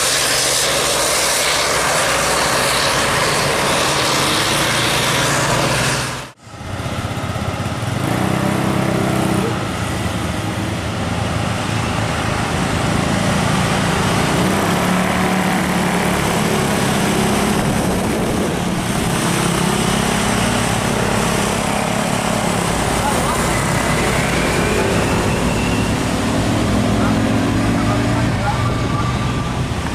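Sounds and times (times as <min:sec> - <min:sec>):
road traffic: 0:00.0 - 0:29.9.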